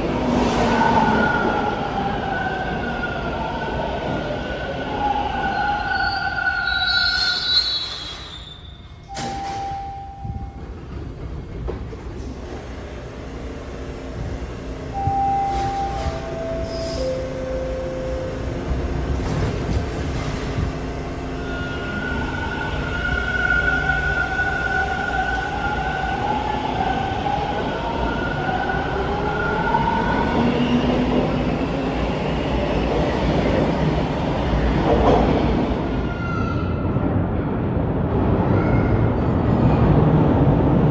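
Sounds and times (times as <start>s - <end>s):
train brakes squealing: 4.9s - 10.9s, 14.6s - 32.4s
train low rumble: 8.9s - 40.9s
single chime tone: 15.0s - 18.4s.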